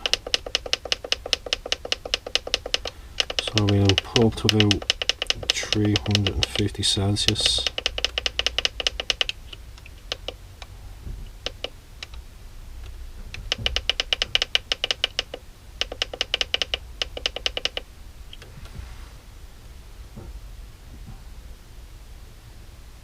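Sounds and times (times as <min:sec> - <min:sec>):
rapid button clicking: 0:00.0 - 0:10.4, 0:11.4 - 0:12.2, 0:13.4 - 0:18.4.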